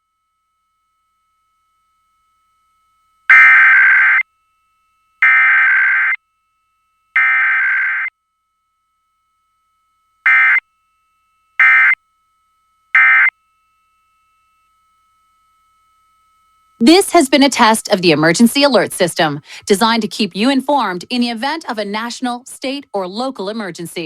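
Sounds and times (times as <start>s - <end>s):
faint steady tone: 0.0s - 24.0s
digital data bursts: 3.3s - 4.2s, 5.2s - 6.2s, 7.2s - 8.1s, 13.0s - 13.3s.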